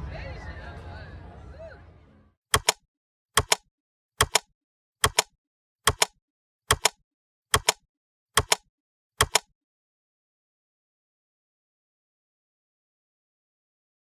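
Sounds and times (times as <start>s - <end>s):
sharp double clicks ticking: 2.5s - 2.8s, 3.4s - 3.6s, 4.2s - 5.3s, 5.9s - 7.8s, 8.4s - 8.6s.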